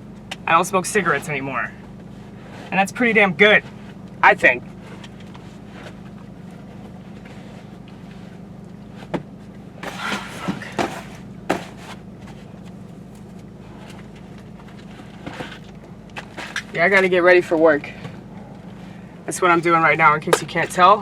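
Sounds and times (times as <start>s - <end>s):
car idling hum: 0.0s - 21.0s
handling knocks and rustles: 4.9s - 17.2s, 20.2s - 21.0s.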